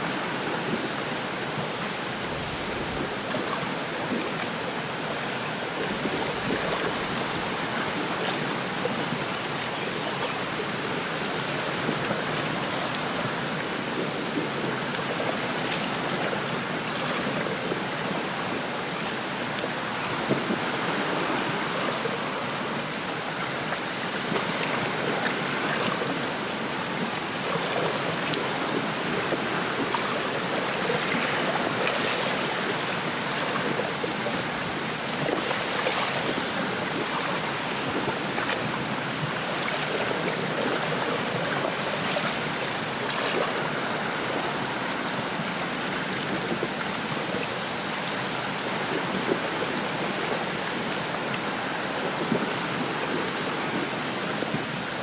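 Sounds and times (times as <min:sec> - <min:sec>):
wind rustling through reeds: 0:00.0 - 0:09.8
small waves lapping shore: 0:00.0 - 0:55.0.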